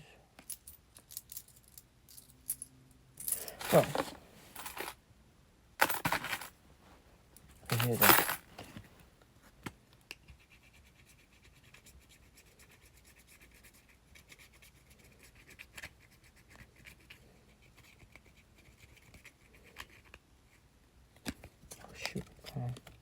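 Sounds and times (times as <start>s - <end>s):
coin scratching card: 3.3s - 5.0s, 5.8s - 6.5s.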